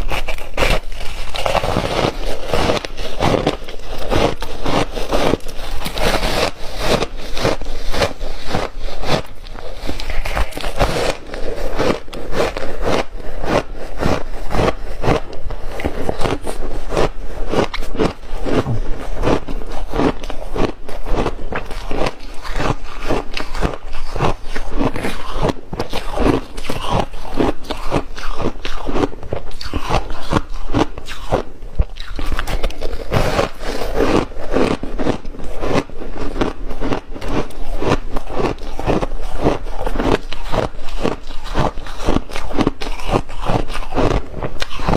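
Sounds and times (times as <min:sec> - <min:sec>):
person crunching ice: 0:00.0 - 0:44.9.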